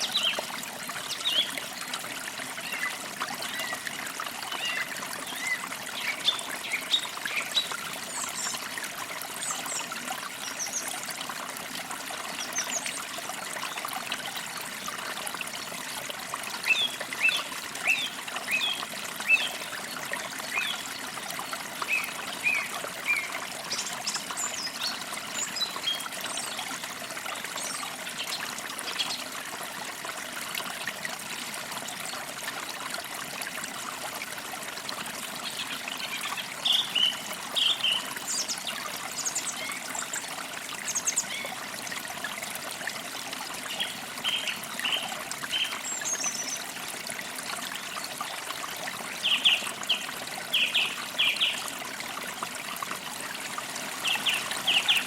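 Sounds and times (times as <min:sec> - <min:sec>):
creek babbling over stones: 0:00.0 - 0:55.0
small birds chirping: 0:54.0 - 0:55.0.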